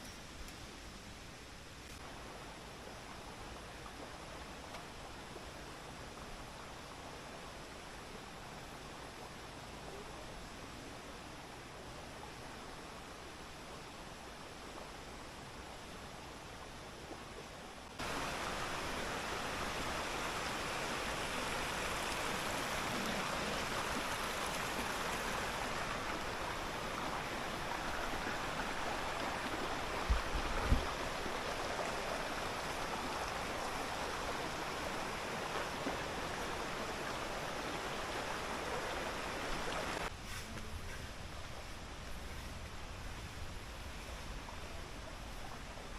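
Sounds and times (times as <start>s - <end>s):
river water rushing: 10.4s - 40.1s.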